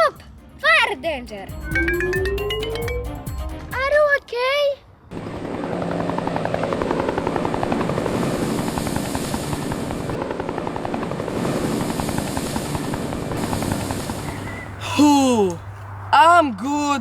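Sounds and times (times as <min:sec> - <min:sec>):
helicopter rotor chopping: 0:05.1 - 0:16.0.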